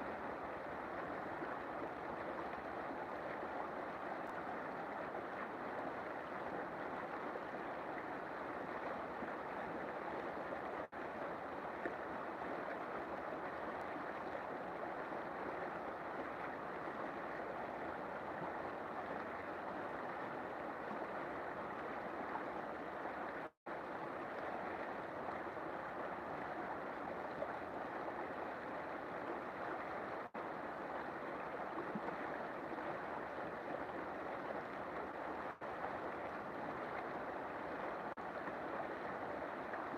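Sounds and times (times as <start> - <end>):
river water flowing: 0.0 - 39.9.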